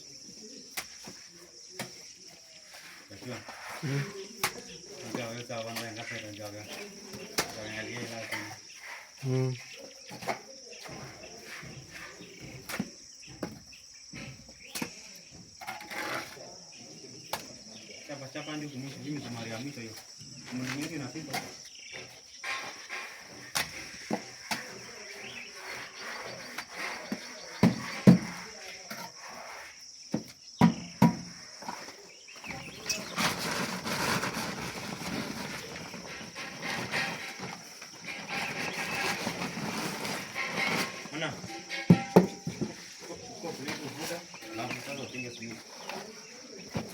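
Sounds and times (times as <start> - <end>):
crickets trilling: 0.0 - 46.9
high insect chirr: 0.0 - 46.9
rasping scrape: 15.6 - 16.5, 21.4 - 29.8, 32.8 - 43.0
rough scraping noise: 15.6 - 16.5, 32.5 - 46.2
sharp knocks: 41.5 - 42.8.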